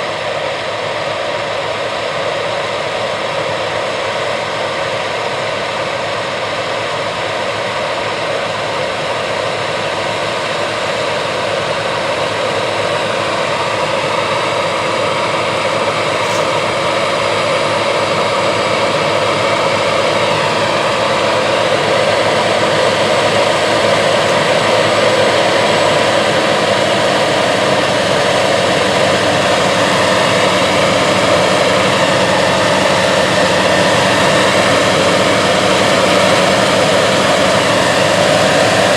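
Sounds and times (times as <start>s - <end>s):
combine harvester droning: 10.2s - 38.9s.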